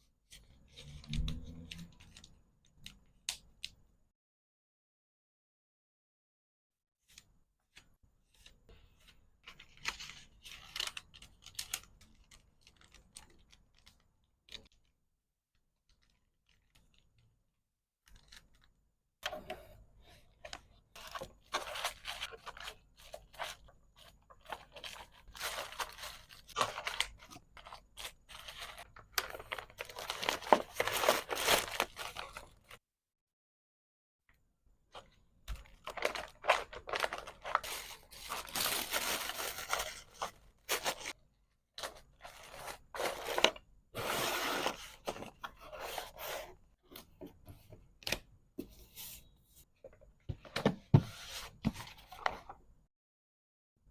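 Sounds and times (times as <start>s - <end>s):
packaging crinkling and tearing: 9.7s - 14.8s, 21.0s - 32.8s, 35.5s - 41.2s.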